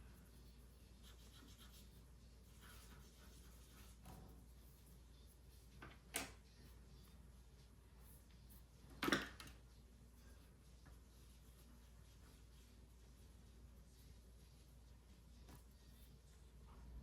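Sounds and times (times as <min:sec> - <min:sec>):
tools rubbing and scratching: 0:00.1 - 0:07.0.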